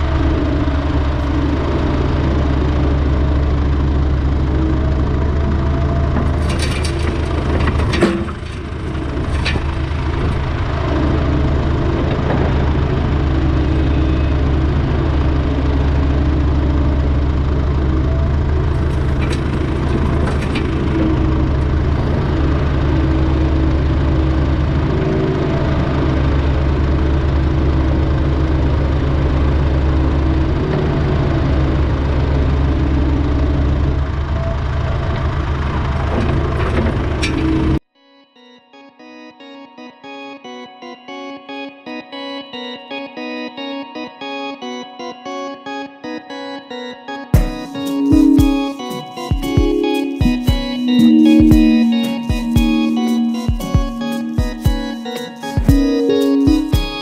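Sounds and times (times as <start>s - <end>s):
diesel engine running: 0.0s - 37.8s.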